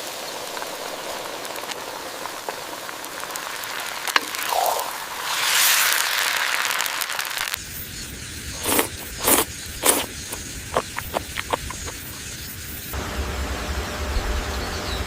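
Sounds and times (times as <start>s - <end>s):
noodles sizzling in a wok: 0.0s - 10.7s.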